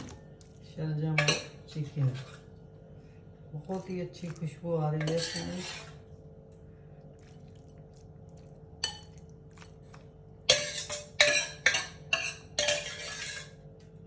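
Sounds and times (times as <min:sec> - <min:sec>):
metal spoon clinking on pot: 0:05.0 - 0:05.9, 0:10.5 - 0:13.5.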